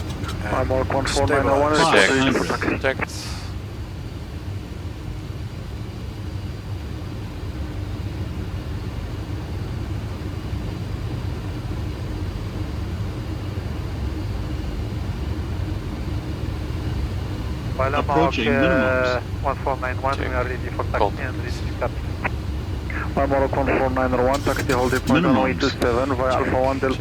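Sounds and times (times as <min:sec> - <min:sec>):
airflow and engine rumble: 0:00.0 - 0:27.0
faint steady tone: 0:12.9 - 0:27.0.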